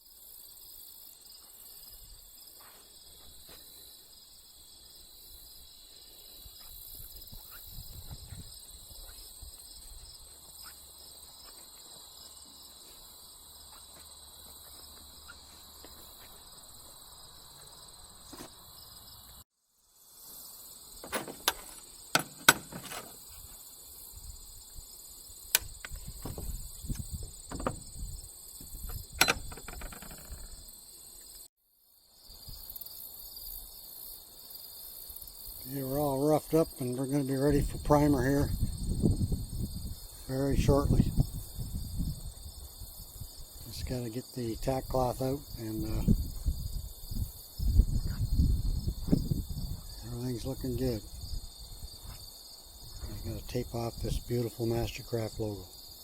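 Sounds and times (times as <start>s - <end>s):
insects chirring: 0.0s - 56.0s
sharp knocks and clatter: 27.5s - 27.9s, 28.9s - 30.5s.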